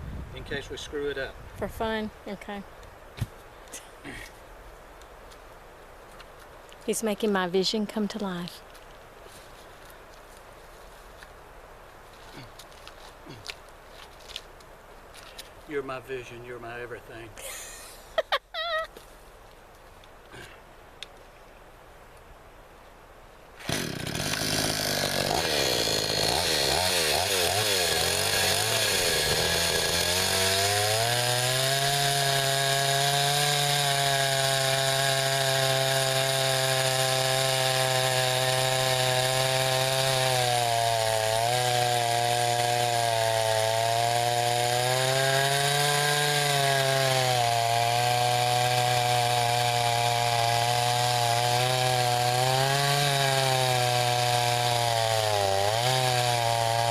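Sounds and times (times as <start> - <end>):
chainsaw cutting wood: 23.6 - 56.9.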